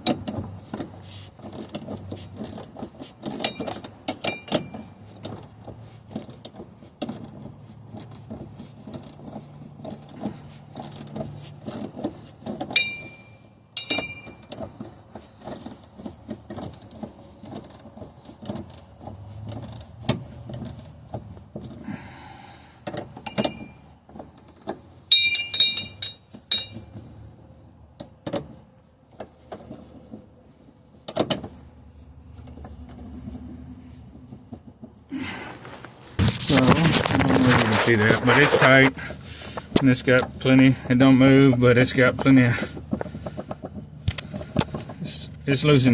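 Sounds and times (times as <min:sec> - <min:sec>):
ringing metallic clinks: 0:03.4 - 0:04.9, 0:12.8 - 0:14.5, 0:23.2 - 0:23.9, 0:25.1 - 0:26.8.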